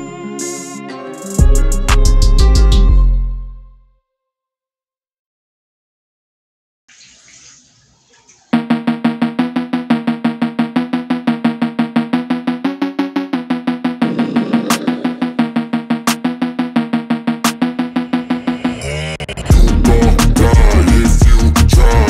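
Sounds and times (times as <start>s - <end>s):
drums: 1.2s - 2.8s, 19.4s - 22.0s.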